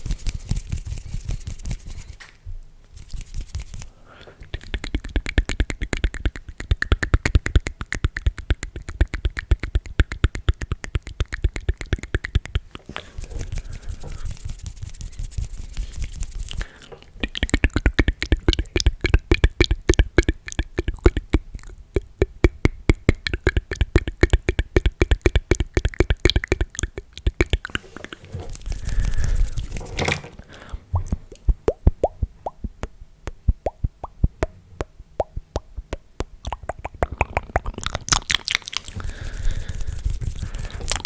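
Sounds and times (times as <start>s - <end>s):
wet mouth clicks: 3.2s - 29.8s, 30.5s - 41.0s.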